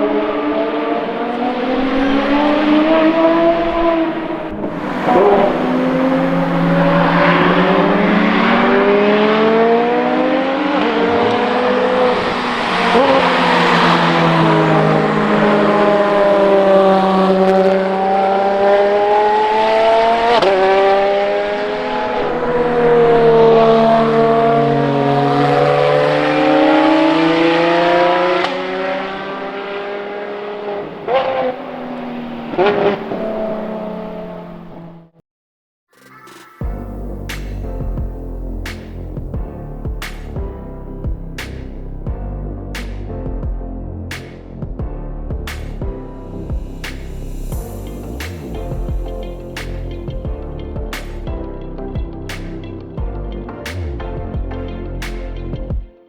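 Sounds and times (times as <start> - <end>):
race car engines at high revs: 0.0 - 35.1.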